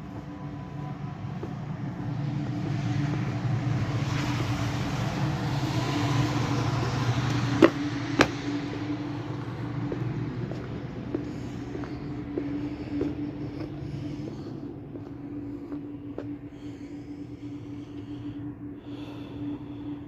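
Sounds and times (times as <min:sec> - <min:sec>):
low droning rumble from the sky: 0:00.0 - 0:20.0.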